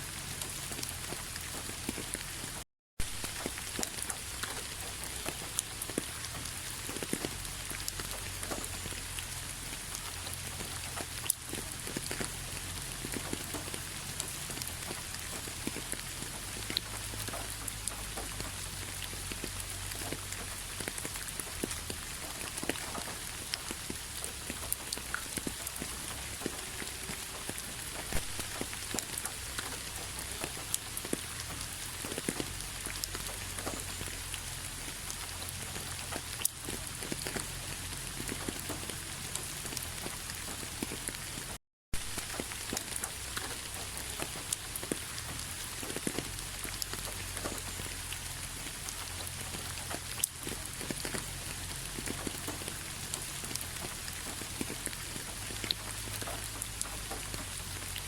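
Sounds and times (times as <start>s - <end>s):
raindrops ticking on a surface: 0.0s - 58.0s
steady rainfall: 0.0s - 58.0s.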